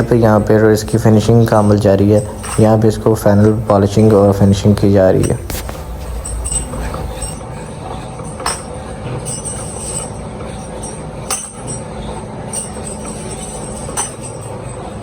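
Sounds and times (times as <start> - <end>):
polishing machine running: 5.4 - 7.3.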